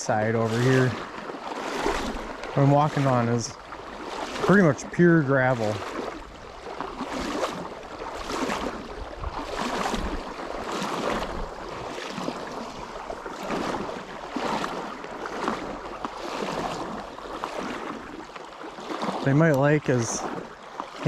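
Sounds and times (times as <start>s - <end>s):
stream rushing: 0.0s - 21.0s
footsteps wading over gravel: 5.5s - 21.0s.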